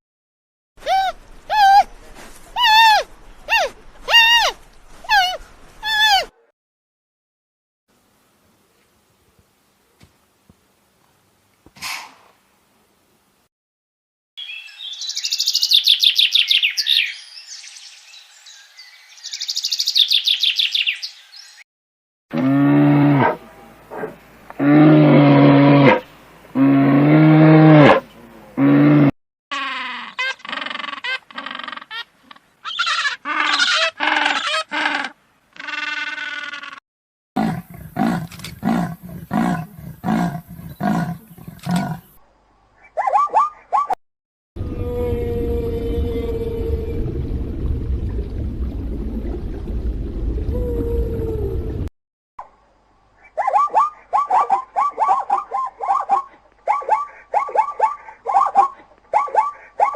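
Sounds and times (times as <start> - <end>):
large animal roaring: 24.6 - 26.0, 26.6 - 28.0, 28.6 - 29.1, 37.4 - 42.1, 44.6 - 48.1.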